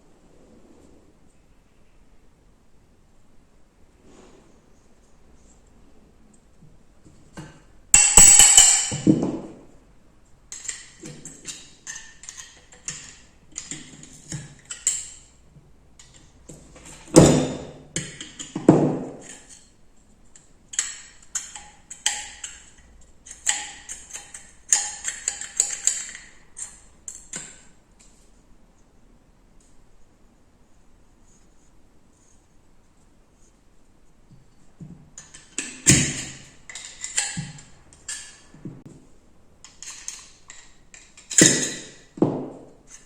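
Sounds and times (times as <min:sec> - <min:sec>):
metal parts clicking and clinking: 0:08.0 - 0:09.3, 0:10.5 - 0:15.4, 0:20.7 - 0:27.6, 0:35.2 - 0:38.6, 0:39.6 - 0:42.1.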